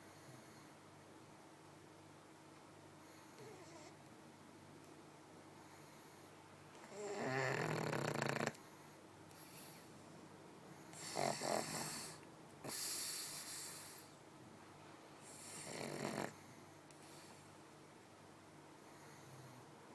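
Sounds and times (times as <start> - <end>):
dog snoring: 3.1 - 4.0, 6.8 - 8.6, 10.9 - 14.1, 15.2 - 17.4.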